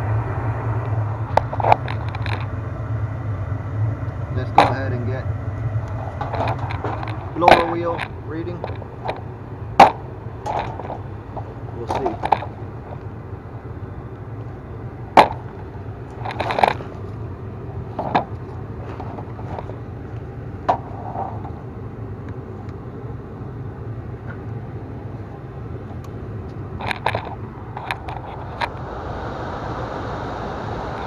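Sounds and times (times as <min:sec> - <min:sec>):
gas furnace humming: 0:00.0 - 0:31.0
sharp clicks and knocks: 0:01.3 - 0:02.5, 0:05.8 - 0:13.0.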